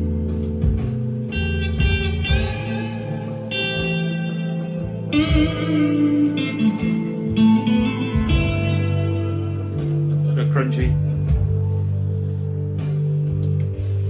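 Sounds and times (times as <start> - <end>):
backing track with bass line: 0.0 - 14.0
clean electric guitar notes: 0.0 - 14.0.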